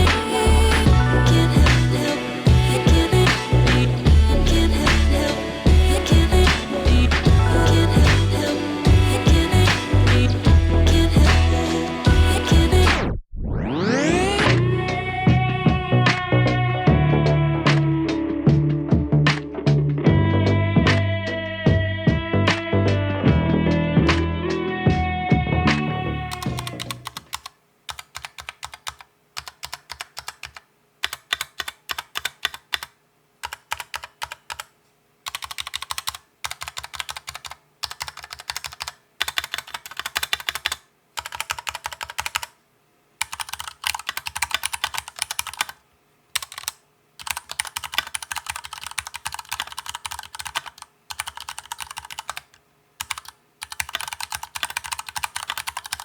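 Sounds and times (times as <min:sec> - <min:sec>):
typing on mechanical keyboard: 0:26.3 - 0:42.6, 0:43.2 - 0:45.8, 0:46.4 - 0:56.0.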